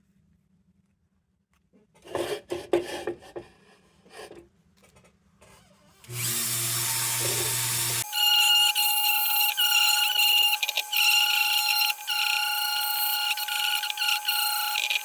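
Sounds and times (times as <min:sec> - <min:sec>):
power tool motor humming: 0:06.0 - 0:15.0.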